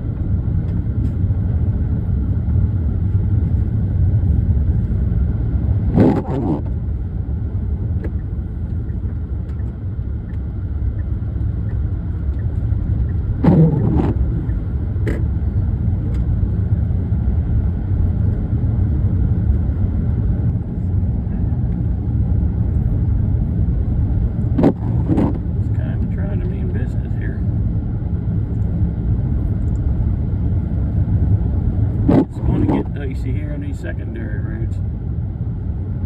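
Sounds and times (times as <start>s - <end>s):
car engine and tyre rumble: 0.0s - 36.0s
windshield wipers swishing: 13.4s - 15.2s.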